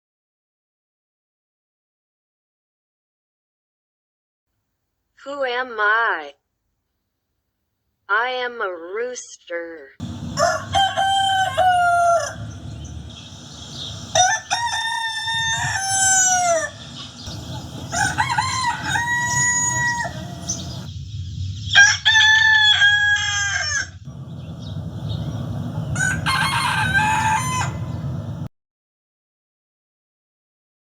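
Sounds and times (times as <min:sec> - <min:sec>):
rooster crowing: 0:10.0 - 0:20.9, 0:21.7 - 0:28.5
low background rumble: 0:10.0 - 0:21.8, 0:24.1 - 0:28.5.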